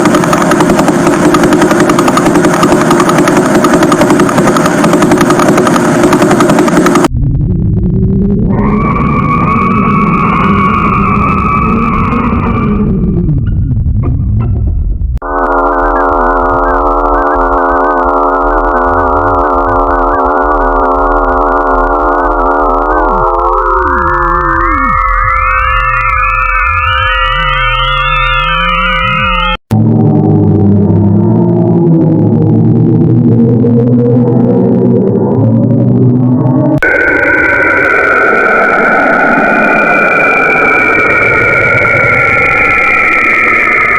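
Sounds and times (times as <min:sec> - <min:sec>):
rapid pulsing buzz: 0:00.0 - 0:07.2, 0:15.2 - 0:43.9
electronic chord of wavering tones: 0:15.2 - 0:29.8, 0:36.8 - 0:43.9.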